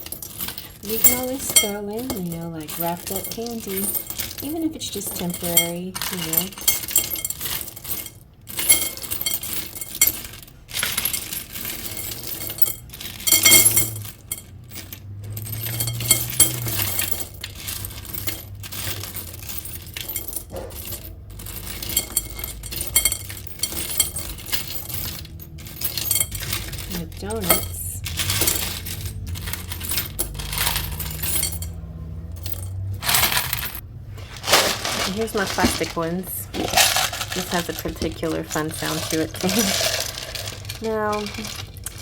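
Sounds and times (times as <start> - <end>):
metal charms clinking: 0.0 - 42.0.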